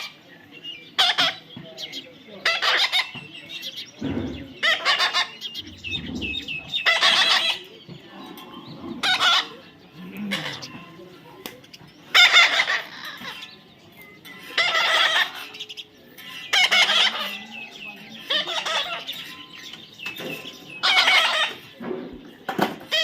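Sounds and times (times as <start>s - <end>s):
parrot squawking: 4.6s - 7.6s, 9.0s - 9.6s, 12.1s - 13.4s, 14.5s - 15.5s, 16.4s - 17.4s, 18.2s - 19.2s, 20.8s - 21.6s.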